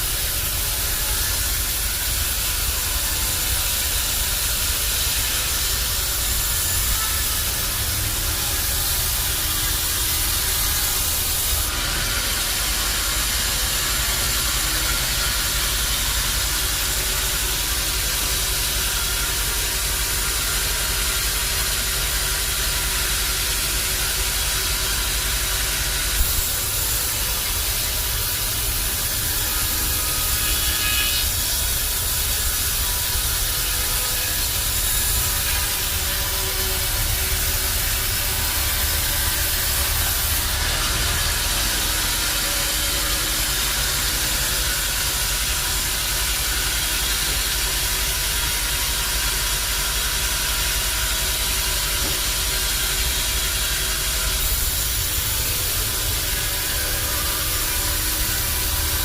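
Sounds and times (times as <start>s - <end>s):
bandsaw hissing: 0.0s - 59.0s.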